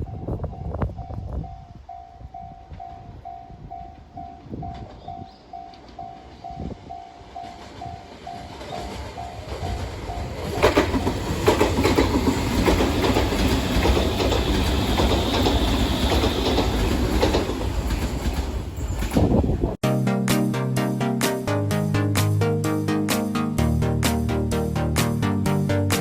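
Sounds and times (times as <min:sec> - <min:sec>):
train passing: 0:00.0 - 0:19.8
wheels clicking over rail joints: 0:02.6 - 0:19.5.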